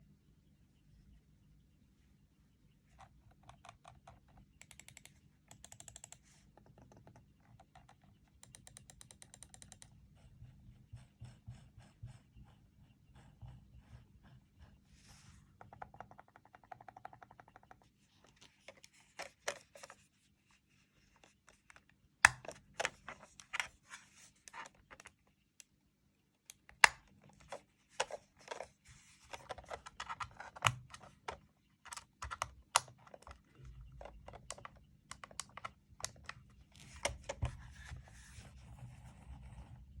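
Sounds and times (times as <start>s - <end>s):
mouse clicking: 3.0s - 9.9s, 21.2s - 23.7s
small evenly spaced ticks: 3.0s - 14.4s.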